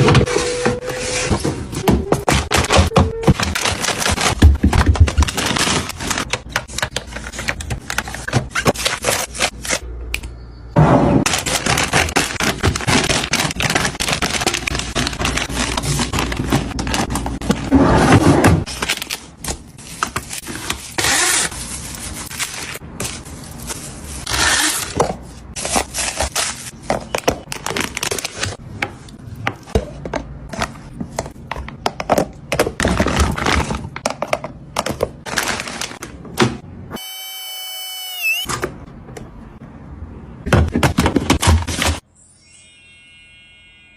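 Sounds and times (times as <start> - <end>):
items knocking in refrigerator: 1.8 - 6.2.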